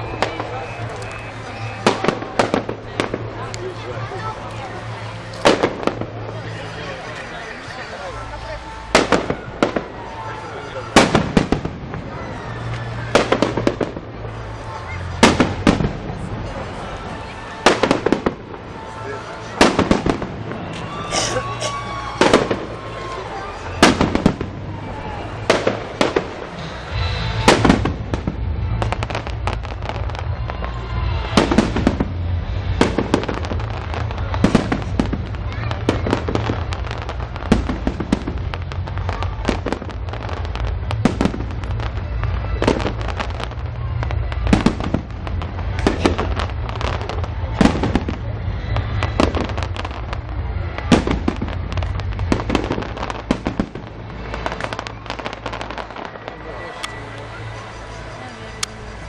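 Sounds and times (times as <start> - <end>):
fireworks crackling: 0.0 - 59.0
low rumble: 22.6 - 59.0.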